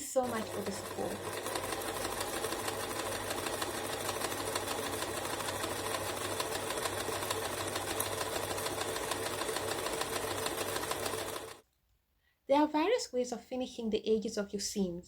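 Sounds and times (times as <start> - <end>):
sewing machine stitching: 0.0 - 11.6.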